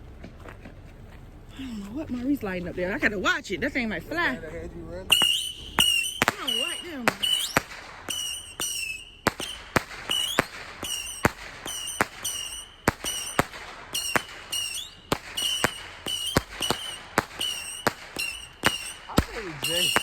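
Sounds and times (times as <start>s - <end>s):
fireworks bangs: 1.6s - 20.0s
high whistling tone: 5.1s - 20.0s.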